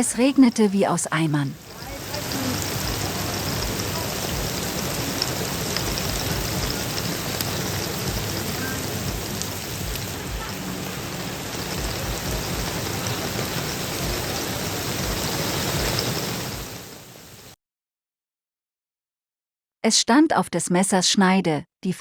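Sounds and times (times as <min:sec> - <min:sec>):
heavy rain pouring: 0:00.0 - 0:17.6.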